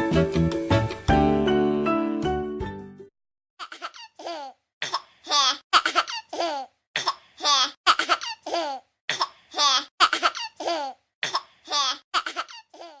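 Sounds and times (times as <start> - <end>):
child laughing: 3.6 - 4.6, 5.3 - 6.7, 7.4 - 8.8, 9.6 - 11.0, 11.7 - 13.0.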